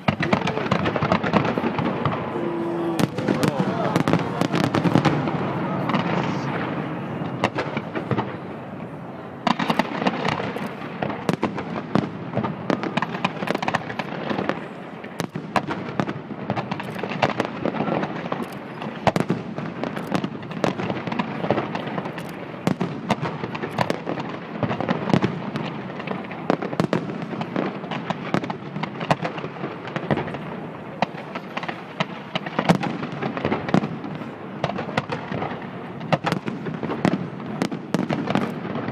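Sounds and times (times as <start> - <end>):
fireworks bursting and crackling: 0.0 - 38.9.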